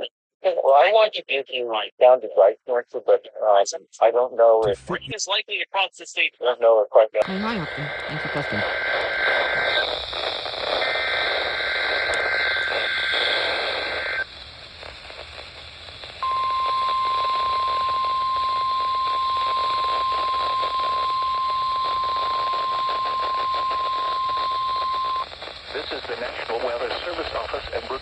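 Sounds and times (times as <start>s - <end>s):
radio static hiss: 7.2s - 28.0s.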